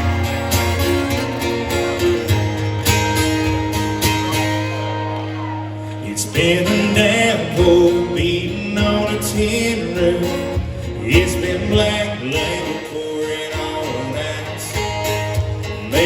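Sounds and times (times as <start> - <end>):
country band playing: 0.0 - 16.0
man singing: 5.9 - 16.0.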